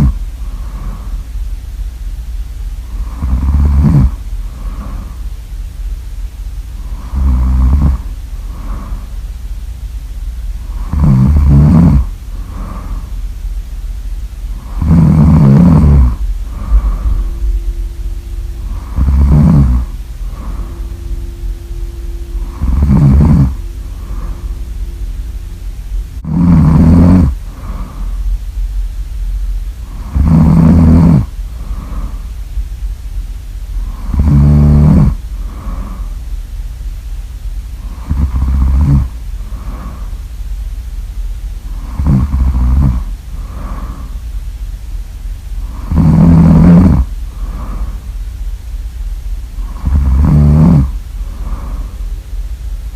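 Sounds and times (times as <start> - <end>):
person snoring loudly: 0.0 - 1.2, 2.9 - 5.2, 6.8 - 9.2, 10.6 - 13.1, 14.5 - 28.3, 29.8 - 32.3, 33.8 - 36.2, 37.8 - 40.2, 41.7 - 44.2, 45.6 - 48.0, 49.6 - 52.0.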